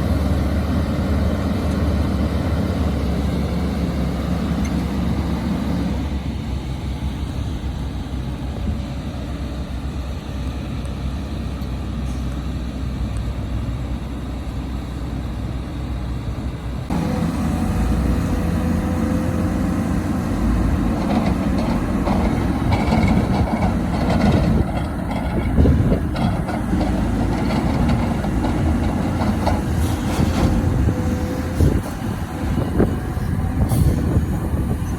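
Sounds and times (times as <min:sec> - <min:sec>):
diesel engine running: 0:00.0 - 0:34.9
knocks and rattles: 0:20.9 - 0:30.6.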